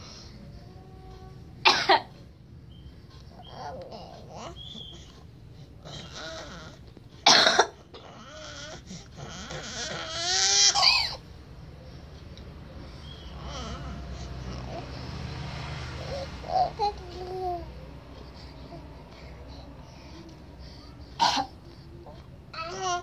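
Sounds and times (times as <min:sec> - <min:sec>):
woman coughing: 0:01.6 - 0:02.1, 0:07.2 - 0:07.8, 0:21.2 - 0:21.6
baby squealing and babbling: 0:08.2 - 0:11.2, 0:16.0 - 0:17.7, 0:22.0 - 0:23.0.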